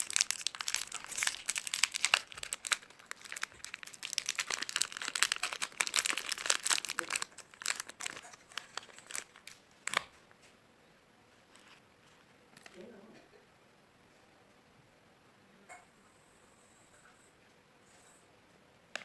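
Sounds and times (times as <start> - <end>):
plastic wrapper crinkling: 0.0 - 10.3.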